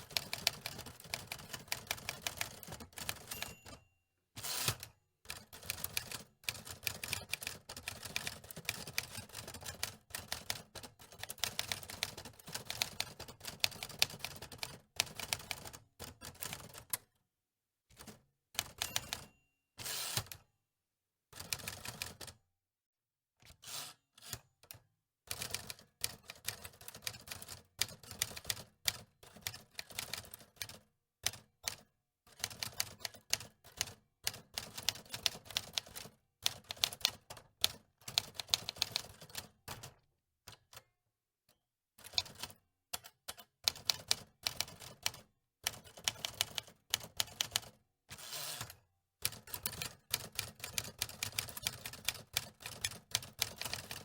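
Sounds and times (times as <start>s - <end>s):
typewriter keys clacking: 48.3s - 54.0s.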